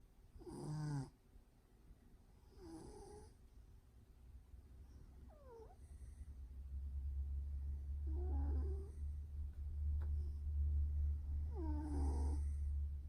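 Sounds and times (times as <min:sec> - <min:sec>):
steady low hum: 0:00.0 - 0:13.0
cat snoring: 0:00.4 - 0:01.2, 0:02.4 - 0:03.4, 0:05.2 - 0:06.2, 0:08.0 - 0:09.1, 0:11.4 - 0:12.8.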